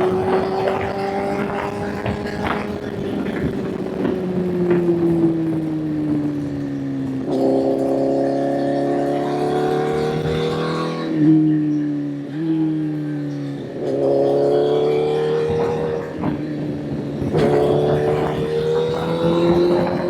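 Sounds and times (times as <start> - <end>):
motorcycle engine accelerating: 0.0 - 20.0.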